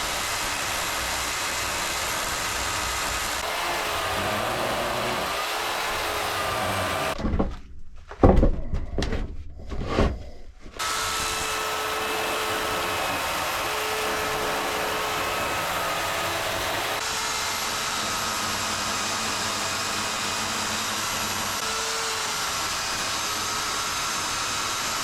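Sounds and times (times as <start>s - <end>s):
chainsaw milling a log: 0.0s - 7.2s, 10.8s - 25.0s
knocks and thuds: 6.6s - 10.2s.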